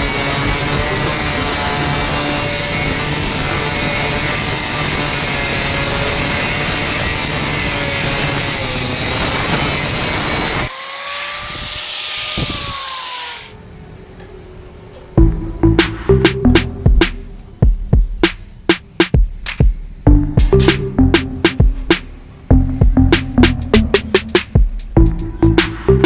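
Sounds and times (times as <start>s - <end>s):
power tool working metal: 0.0s - 13.6s.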